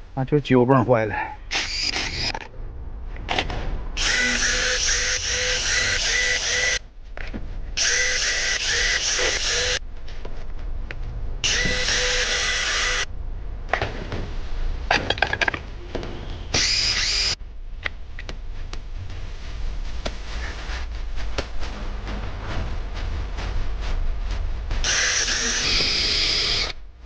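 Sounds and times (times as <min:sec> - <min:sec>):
power drill running: 0:01.5 - 0:02.3, 0:04.0 - 0:06.8, 0:07.8 - 0:09.8, 0:11.4 - 0:13.1, 0:16.5 - 0:17.4, 0:24.8 - 0:26.8.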